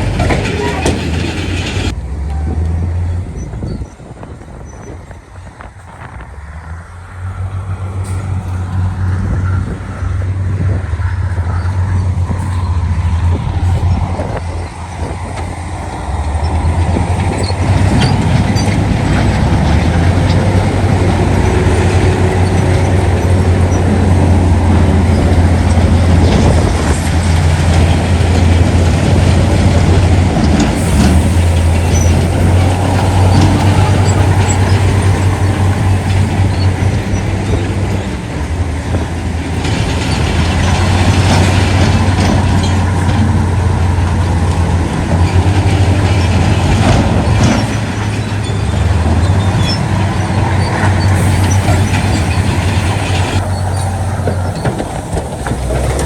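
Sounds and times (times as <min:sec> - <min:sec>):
knocks and rattles: 0:00.0 - 0:02.0
heavy machinery engine hum: 0:00.0 - 0:56.0.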